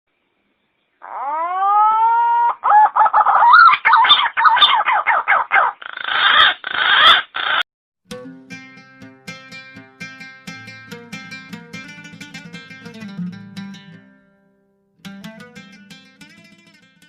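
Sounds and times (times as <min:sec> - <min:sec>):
pigeon calling: 0:01.0 - 0:07.6
soft plucked guitar music: 0:08.0 - 0:17.0.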